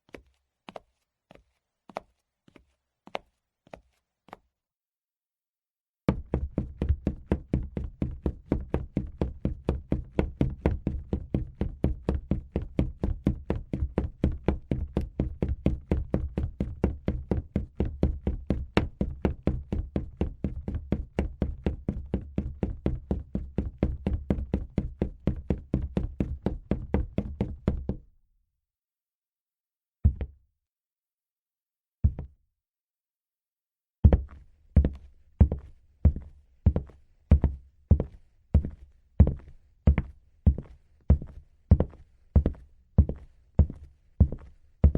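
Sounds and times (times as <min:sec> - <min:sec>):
running footsteps on hard floor: 0:06.1 - 0:28.0, 0:34.1 - 0:44.9.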